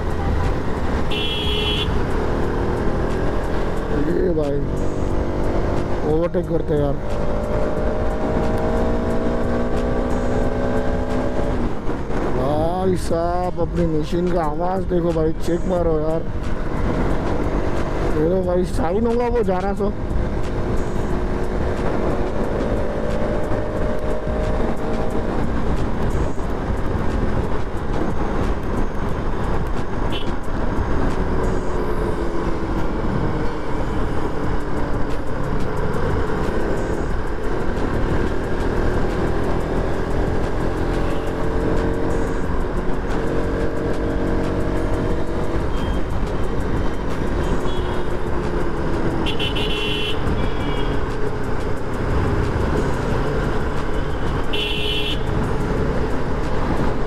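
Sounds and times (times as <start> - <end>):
motorcycle engine revving: 0.0 - 12.5, 20.0 - 57.0
road noise: 0.0 - 57.0.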